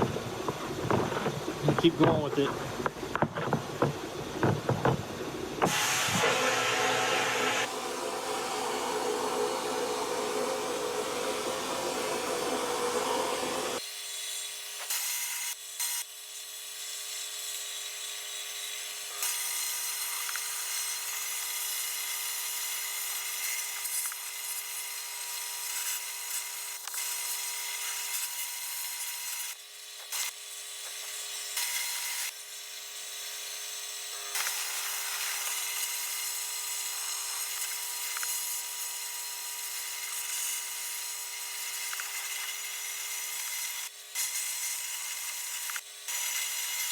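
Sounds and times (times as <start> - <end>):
blasting hiss: 5.6 - 13.8.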